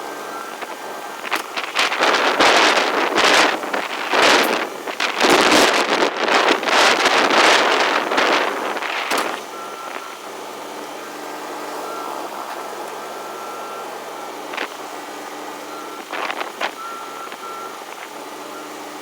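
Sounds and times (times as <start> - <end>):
vehicle engine running: 0.0 - 19.0
reversing alarm beeps: 0.1 - 3.5, 9.3 - 19.0
wind buffeting microphone: 0.1 - 19.0.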